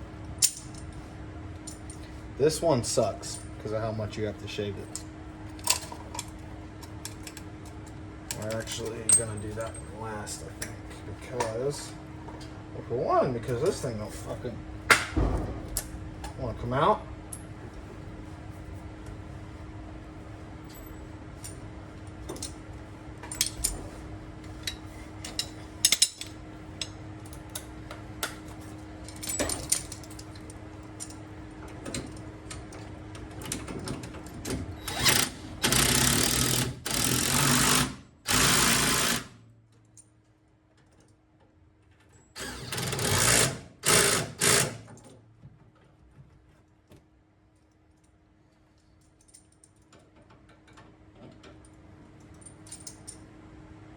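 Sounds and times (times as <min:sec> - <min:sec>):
steady hum: 0:00.0 - 0:40.0
tools clicking on metal: 0:24.6 - 0:28.4, 0:49.0 - 0:53.2
power tool bursts: 0:34.9 - 0:39.3, 0:42.4 - 0:44.8.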